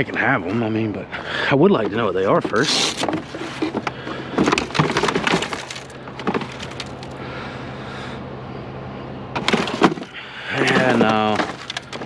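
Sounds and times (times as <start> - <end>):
steady low hum: 0.0 - 12.0
junk knocking and clattering: 1.8 - 7.2, 9.4 - 12.0.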